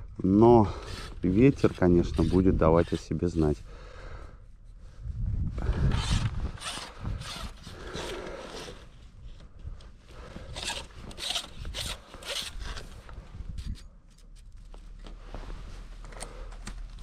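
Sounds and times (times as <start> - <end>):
rasping scraping strokes: 0.6 - 3.6
wind buffeting microphone: 4.9 - 7.9.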